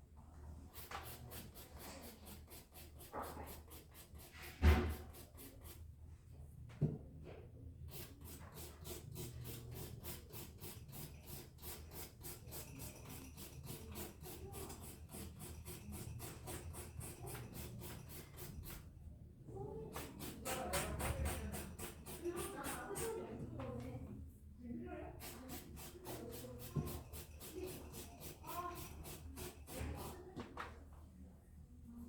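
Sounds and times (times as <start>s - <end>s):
nail file scratching fingernail: 0.8s - 4.3s, 7.9s - 18.8s, 20.0s - 23.2s, 25.2s - 30.2s.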